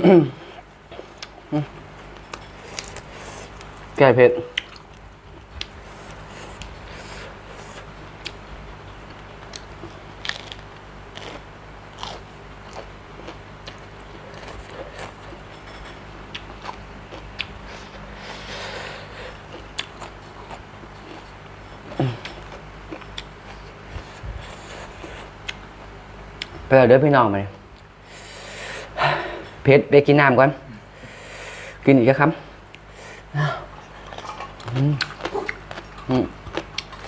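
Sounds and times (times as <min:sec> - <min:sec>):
person chewing food: 0:00.4 - 0:03.9, 0:04.5 - 0:26.6, 0:32.7 - 0:37.0
food crunching: 0:02.1 - 0:03.8, 0:04.5 - 0:18.1, 0:19.3 - 0:25.8, 0:33.7 - 0:37.0.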